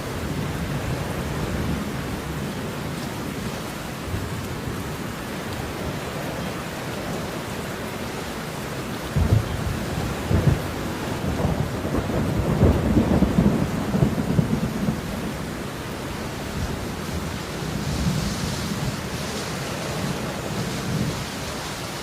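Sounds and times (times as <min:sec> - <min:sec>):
rain falling: 0:00.0 - 0:22.0
thunder rumbling: 0:09.1 - 0:22.0.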